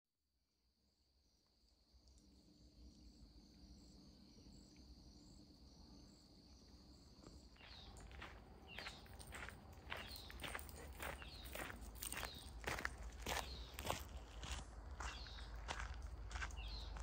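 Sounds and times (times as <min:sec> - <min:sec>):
insect chirps: 0:00.7 - 0:17.0
footsteps on trail: 0:07.3 - 0:17.0.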